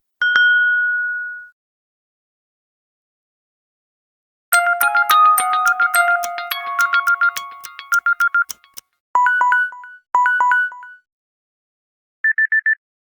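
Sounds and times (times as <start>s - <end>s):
chiming alarm melody: 4.6s - 8.8s
rapid beeps: 4.8s - 8.8s.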